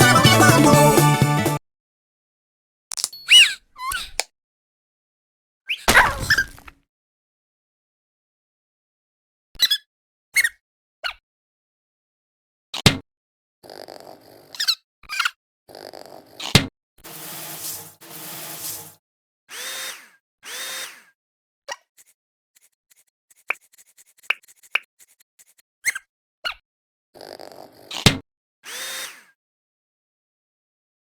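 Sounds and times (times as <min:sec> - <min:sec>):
cartoon sharp hits: 0:05.9 - 0:06.6.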